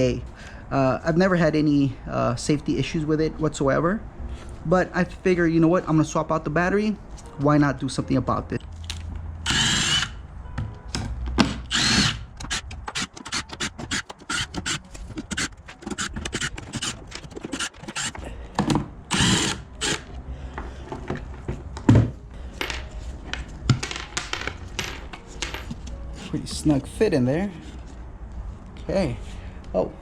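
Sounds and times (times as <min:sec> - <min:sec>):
power drill running: 0:09.4 - 0:10.2, 0:11.7 - 0:18.2, 0:19.1 - 0:20.1
handling clicks and knocks: 0:12.4 - 0:19.0.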